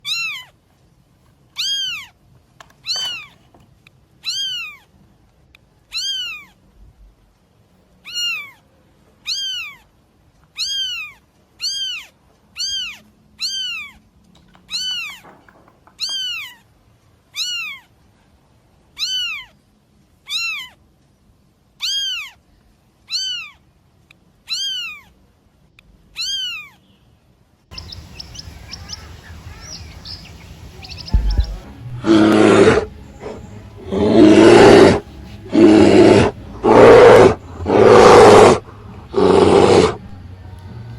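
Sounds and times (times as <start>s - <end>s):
cat meowing: 0.0s - 0.5s, 1.6s - 2.2s, 4.2s - 4.9s, 5.9s - 6.6s, 8.0s - 8.6s, 9.2s - 9.9s, 10.6s - 14.0s, 14.7s - 15.2s, 16.0s - 16.6s, 17.4s - 17.9s, 19.0s - 19.5s, 20.3s - 20.8s, 21.8s - 22.4s, 23.1s - 23.6s, 24.5s - 25.1s, 26.2s - 26.8s, 31.1s - 40.1s.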